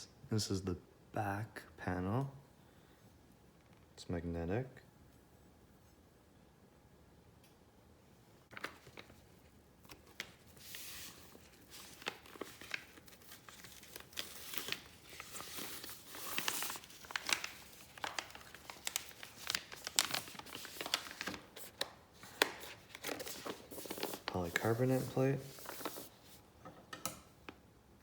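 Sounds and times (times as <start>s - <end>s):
plastic packaging crinkling: 8.5s - 26.4s.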